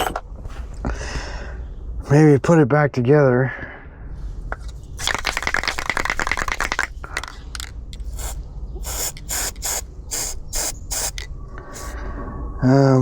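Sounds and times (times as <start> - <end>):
aerosol can spraying: 5.0 - 6.9, 8.0 - 12.0
ratchet wrench clicking: 6.6 - 12.0.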